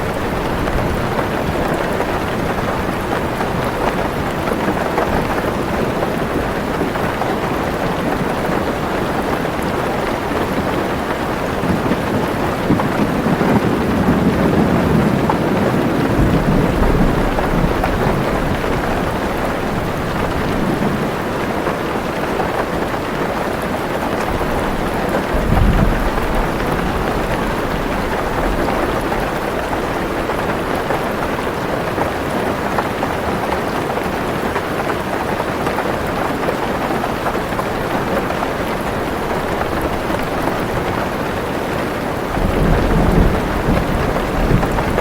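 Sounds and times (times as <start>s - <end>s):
heavy rain on car roof: 0.0s - 45.0s
low roll of thunder: 11.5s - 21.2s, 24.3s - 30.2s, 42.3s - 45.0s.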